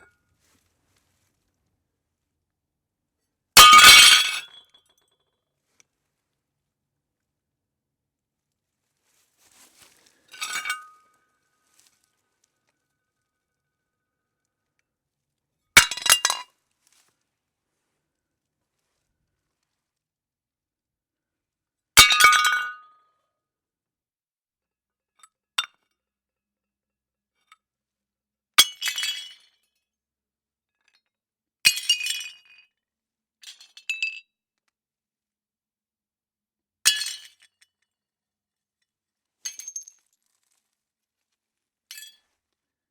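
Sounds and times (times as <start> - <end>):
plates smashing: 3.6 - 4.4.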